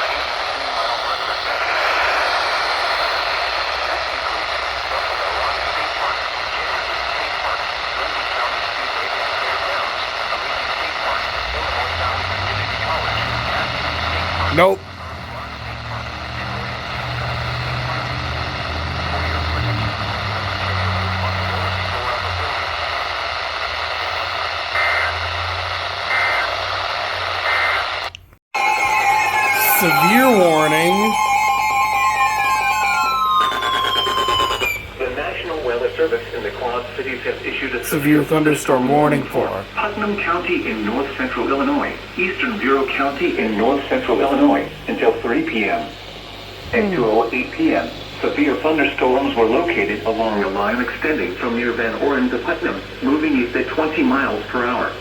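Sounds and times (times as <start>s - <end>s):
radio hiss: 0.0s - 18.2s, 37.6s - 39.7s
steady single-pitch alert tone: 28.6s - 34.9s
two-tone digital data screech: 28.6s - 34.9s.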